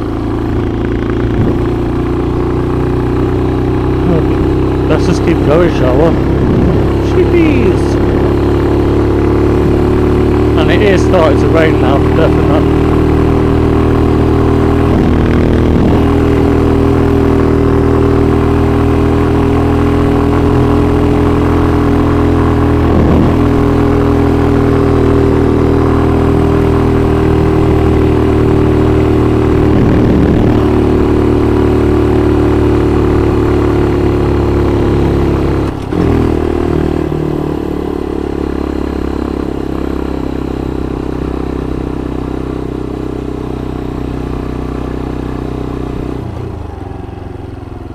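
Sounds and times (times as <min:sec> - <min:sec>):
motorcycle engine running: 0:00.0 - 0:47.9.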